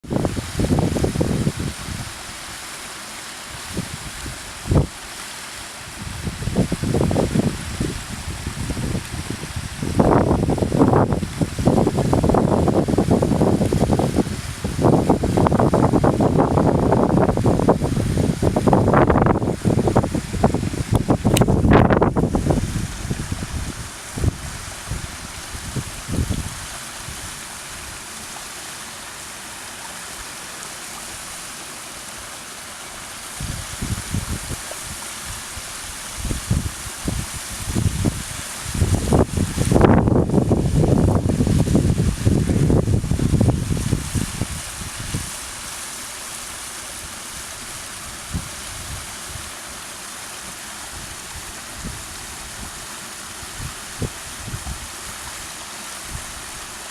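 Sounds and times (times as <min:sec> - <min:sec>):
wind buffeting microphone: 0:00.0 - 0:02.2, 0:03.6 - 0:05.0, 0:05.9 - 0:28.0, 0:33.4 - 0:45.4, 0:50.9 - 0:55.4
waterfall rushing: 0:00.0 - 0:56.9.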